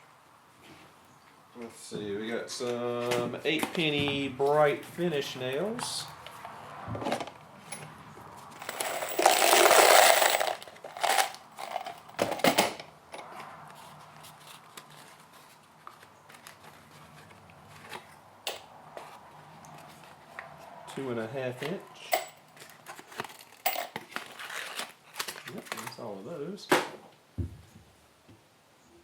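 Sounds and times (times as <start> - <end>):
nails poured into plastic bin: 8.5 - 12.8
handling clicks and knocks: 8.5 - 13.5.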